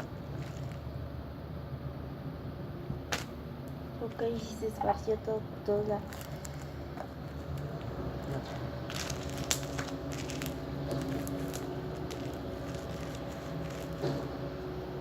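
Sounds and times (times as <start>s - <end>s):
slime squelching: 0.0s - 0.9s, 6.0s - 14.6s
crunchy slime crackly clicks: 7.4s - 14.3s.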